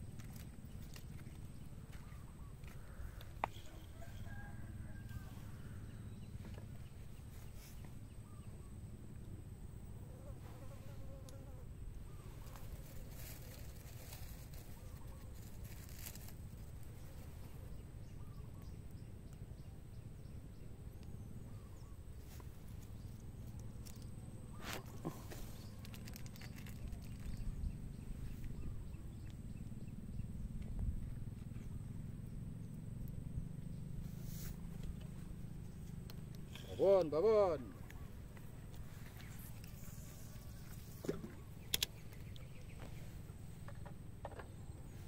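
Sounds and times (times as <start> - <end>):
insects buzzing: 0.0 - 45.0
steady low rumble: 11.8 - 36.8.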